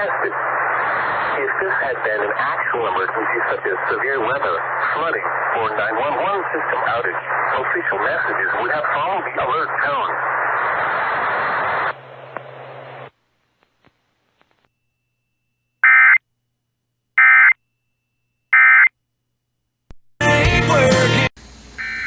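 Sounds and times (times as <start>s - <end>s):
radio station audio: 0.0s - 13.2s, 20.2s - 21.3s
radio hiss with low hum: 0.0s - 14.7s.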